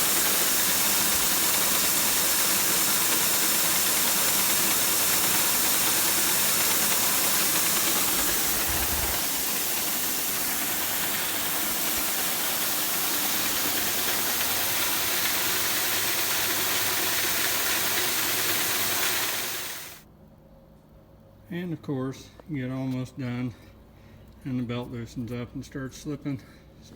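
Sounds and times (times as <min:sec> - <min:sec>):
combine harvester running: 0:00.0 - 0:20.0.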